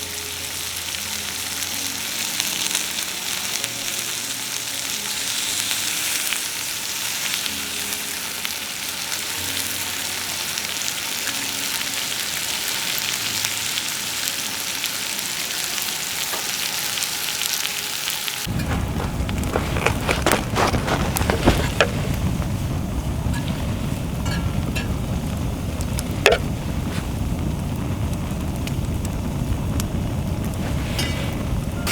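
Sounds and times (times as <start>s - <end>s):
campfire hissing and crackling: 0.0s - 31.9s
low rumble: 18.5s - 31.9s.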